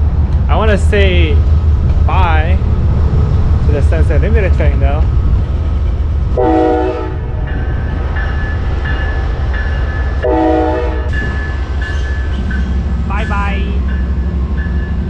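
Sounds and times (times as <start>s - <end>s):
low engine rumble: 0.0s - 9.6s
locomotive horn blasts: 6.4s - 7.2s, 10.2s - 11.2s.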